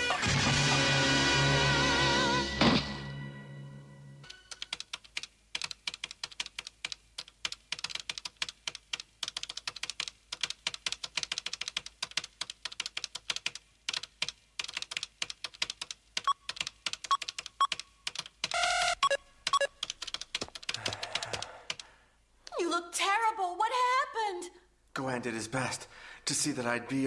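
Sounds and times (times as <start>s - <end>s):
rapid typing on keyboard: 4.4s - 21.9s
short electronic beeps: 18.5s - 19.7s.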